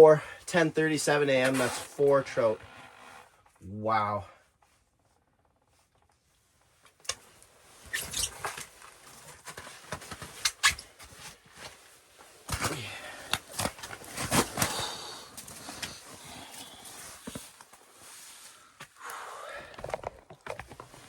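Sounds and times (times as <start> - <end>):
rustling and scraping: 1.2 - 3.6, 4.5 - 19.0, 19.8 - 21.0
handling knocks and clicks: 19.8 - 21.0.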